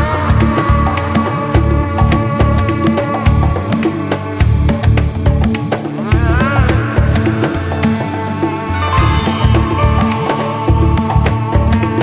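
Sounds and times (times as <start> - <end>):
pitch-bending melodic synth line: 8.8 - 10.6.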